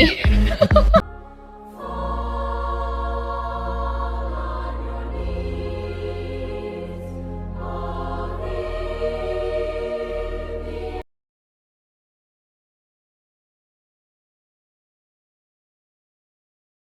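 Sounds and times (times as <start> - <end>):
choir holding long chords: 0.0 - 11.0.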